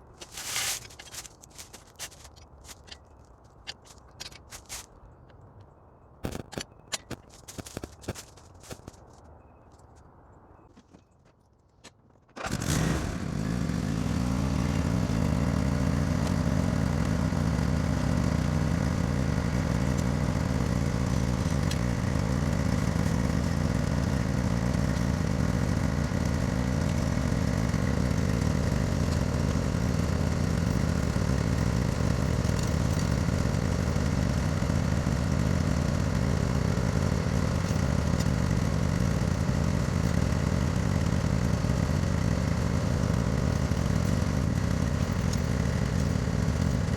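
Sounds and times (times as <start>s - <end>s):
lawn mower engine running: 0.0s - 3.0s, 3.6s - 4.9s, 7.2s - 9.0s, 12.4s - 46.9s.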